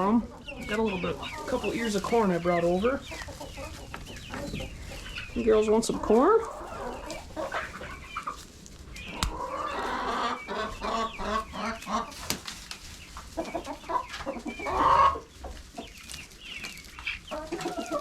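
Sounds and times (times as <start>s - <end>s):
hens clucking: 0.0s - 18.0s
sharp click: 9.2s - 9.4s.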